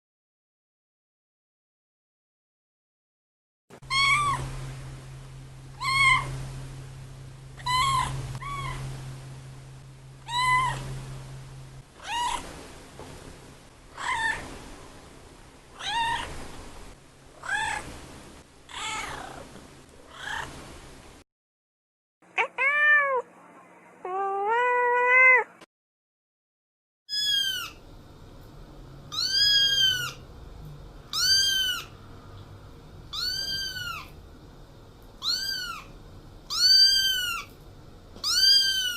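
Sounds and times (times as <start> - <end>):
cat meowing: 3.9 - 4.4, 5.8 - 6.3, 7.6 - 8.8, 10.2 - 10.9, 12.0 - 12.4, 14.0 - 14.4, 15.8 - 16.3, 17.4 - 17.8, 18.7 - 19.4, 22.4 - 23.3, 24.0 - 25.6, 29.1 - 30.2, 33.1 - 34.1, 35.2 - 35.9, 36.5 - 37.5, 38.2 - 38.9.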